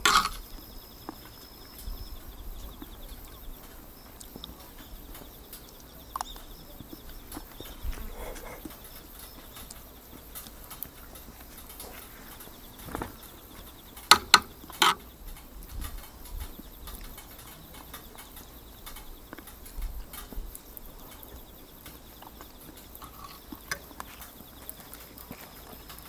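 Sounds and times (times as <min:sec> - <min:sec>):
wood fire crackling: 0:00.0 - 0:26.0
sharp knocks: 0:14.1 - 0:15.0.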